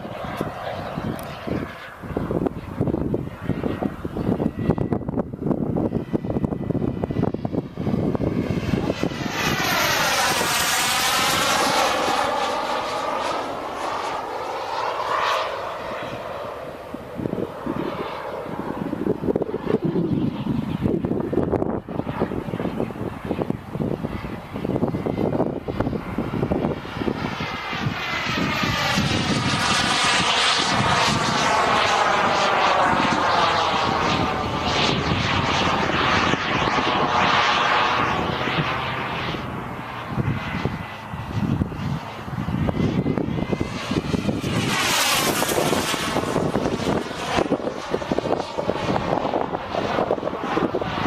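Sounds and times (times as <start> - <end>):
jet turbine whooshing past: 0.0 - 51.0
wind buffeting microphone: 0.0 - 51.0.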